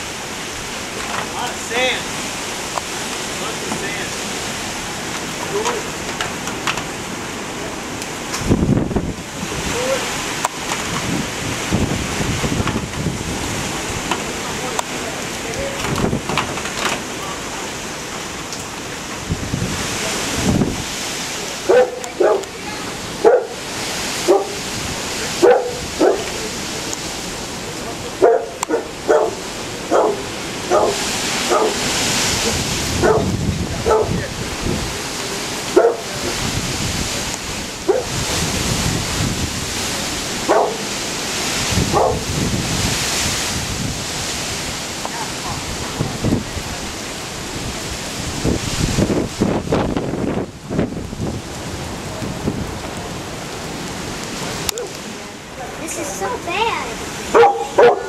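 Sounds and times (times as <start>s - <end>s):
surf: 0.0s - 58.0s
windy hiss: 0.0s - 58.0s
dog barking: 21.6s - 22.5s, 23.2s - 23.6s, 24.2s - 24.6s, 25.4s - 26.4s, 28.2s - 31.8s, 33.0s - 34.2s, 35.7s - 36.1s, 37.9s - 38.2s, 40.4s - 40.9s, 41.9s - 42.3s, 57.3s - 58.0s.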